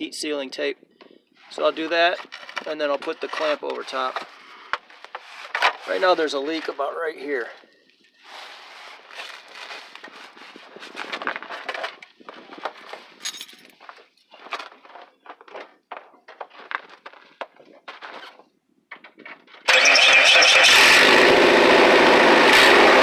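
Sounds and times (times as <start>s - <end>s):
loud car engine: 19.7s - 23.0s.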